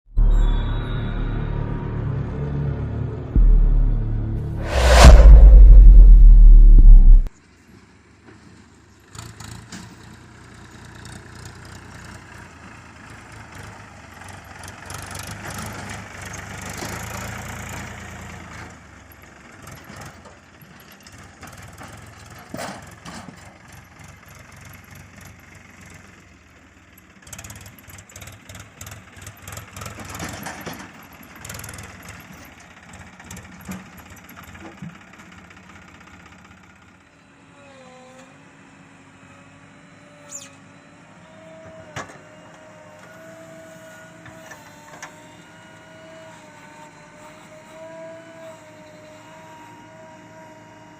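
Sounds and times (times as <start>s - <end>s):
diesel engine revving: 2.2s - 7.3s
sharp knock: 3.4s - 7.3s.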